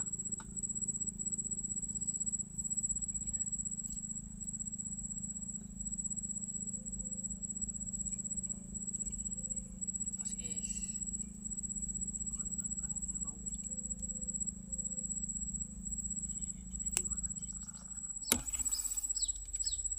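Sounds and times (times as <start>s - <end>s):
night insects trilling: 0.0s - 19.9s
low hum: 5.2s - 19.9s.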